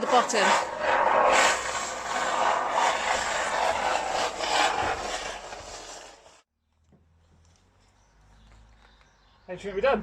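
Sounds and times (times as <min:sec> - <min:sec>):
expanding foam can spraying: 0:00.0 - 0:06.4.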